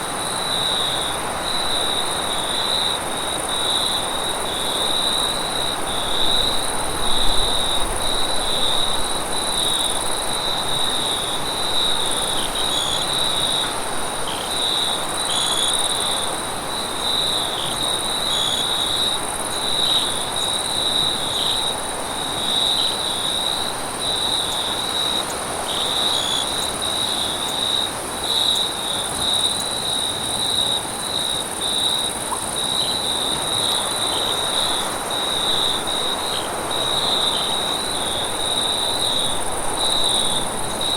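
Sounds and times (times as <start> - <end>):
crickets and insects chirping: 0.0 - 40.9.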